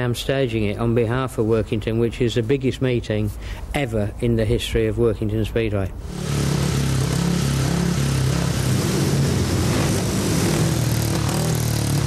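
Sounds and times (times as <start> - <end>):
engine running steadily: 6.0 - 12.0.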